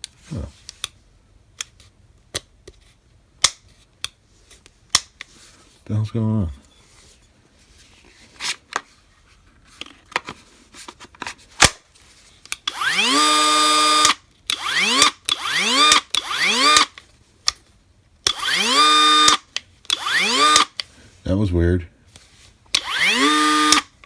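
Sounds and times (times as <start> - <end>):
cut-off tool motor whining: 12.7 - 16.9, 18.3 - 20.7, 22.7 - 23.9.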